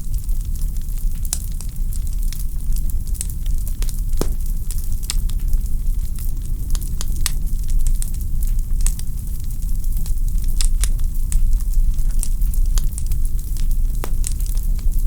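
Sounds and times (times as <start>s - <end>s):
fire low rumble: 0.0s - 15.0s
logs crackling and popping: 0.0s - 15.0s.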